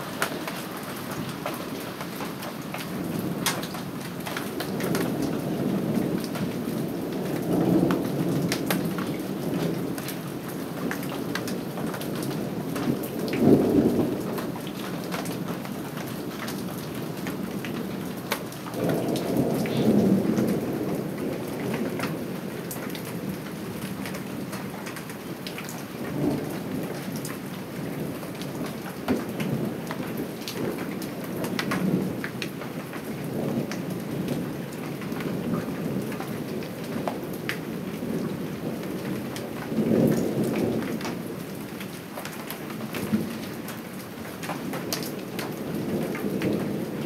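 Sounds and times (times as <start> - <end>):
steady rain falling: 0.0 - 47.0
thunder rumbling: 18.7 - 23.8.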